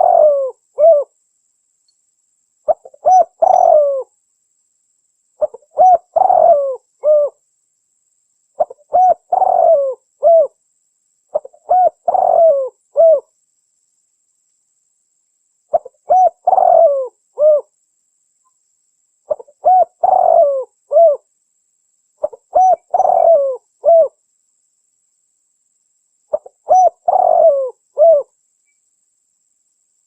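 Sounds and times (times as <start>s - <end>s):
dove cooing: 0.0s - 1.2s, 2.7s - 4.1s, 5.4s - 7.4s, 8.6s - 10.6s, 11.3s - 13.3s, 15.7s - 17.7s, 19.3s - 21.3s, 22.2s - 24.2s, 26.3s - 28.3s.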